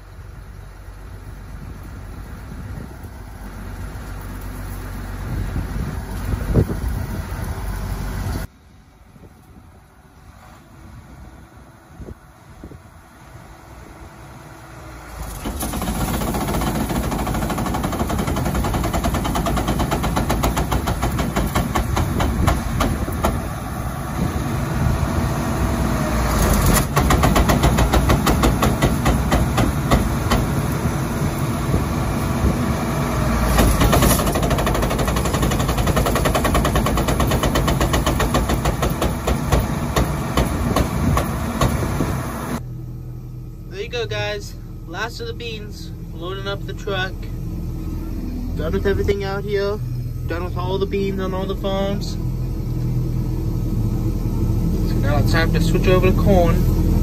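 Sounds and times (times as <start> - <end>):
combine engine: 0.0 - 57.0
unloading auger machinery running: 14.5 - 42.7.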